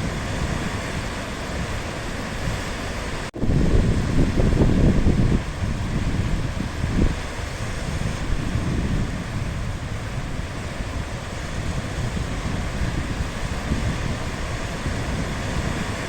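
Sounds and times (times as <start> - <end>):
sea waves washing in: 0.0 - 16.0
wind on microphone: 0.0 - 16.0.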